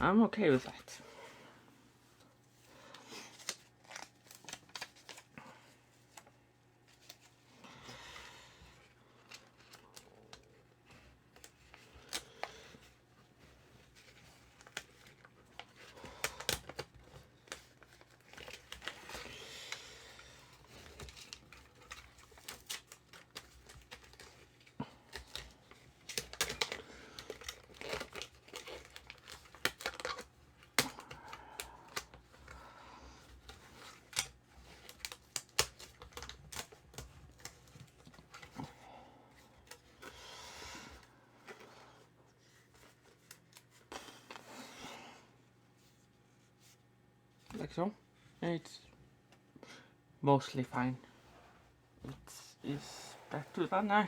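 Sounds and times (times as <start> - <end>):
carpet pieces crinkling and tearing: 3.3 - 5.3, 13.8 - 32.6, 33.3 - 38.6.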